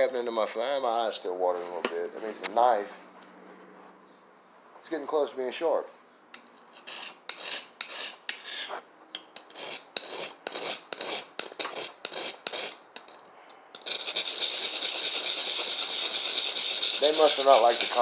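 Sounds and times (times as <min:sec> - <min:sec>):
knife blade being sharpened: 0:06.8 - 0:13.2.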